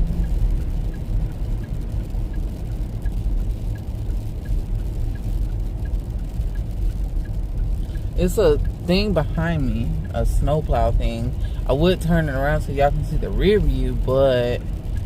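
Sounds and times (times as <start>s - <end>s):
faint ticking: 0.0s - 15.0s
low rumble inside car: 0.0s - 15.0s.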